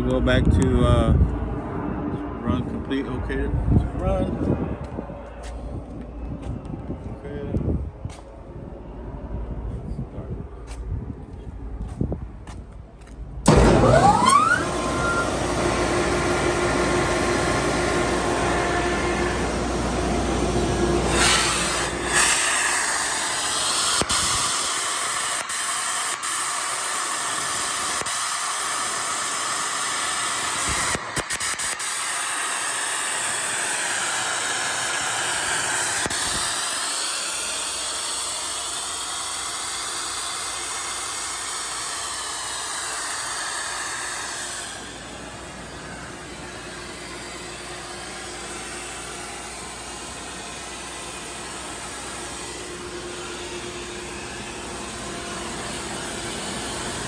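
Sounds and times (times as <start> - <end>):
air compressor running: 13.4 - 57.0.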